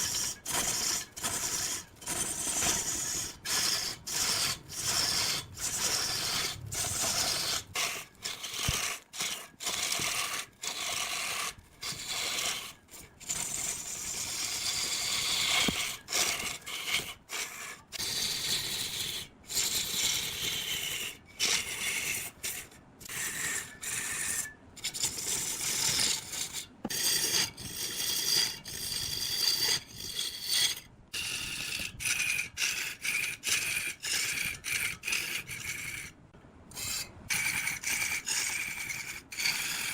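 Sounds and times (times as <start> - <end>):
hand tool rasping across wood: 0.0 - 36.1.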